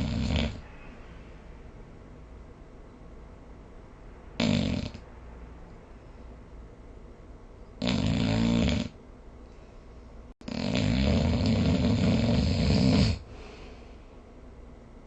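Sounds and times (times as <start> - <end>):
snoring: 0.0 - 0.6, 4.4 - 5.0, 7.8 - 9.0, 10.4 - 13.3.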